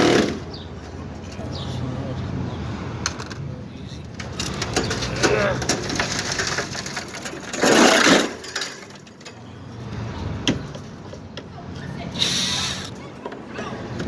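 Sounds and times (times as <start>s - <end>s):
knocks clicks and scraping: 3.0s - 11.6s.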